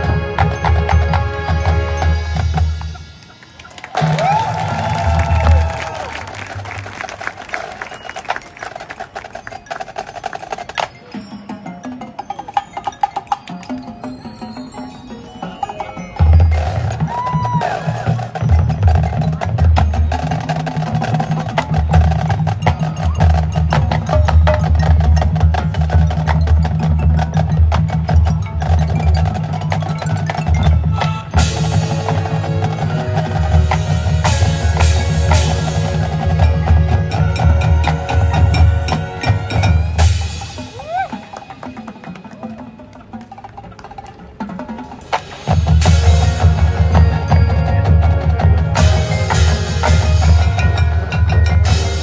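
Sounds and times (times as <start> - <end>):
marching band playing: 0.0 - 52.0
ringing mallet tones: 7.9 - 17.6, 18.4 - 43.4, 45.8 - 52.0
sharp percussion hits: 7.9 - 52.0.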